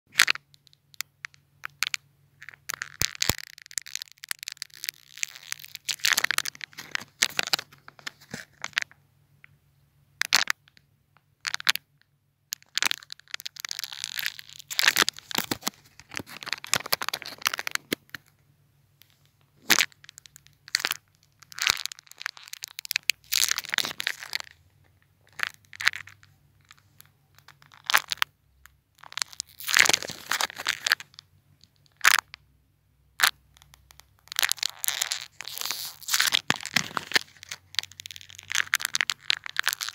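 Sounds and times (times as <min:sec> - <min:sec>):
ice cracking: 0:34.4 - 0:39.9.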